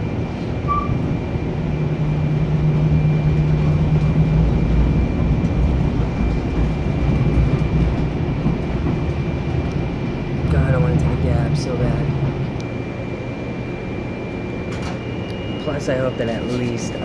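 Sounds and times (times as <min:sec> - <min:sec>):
train rumbling: 0:00.0 - 0:17.0
thin steady whine: 0:10.4 - 0:17.0.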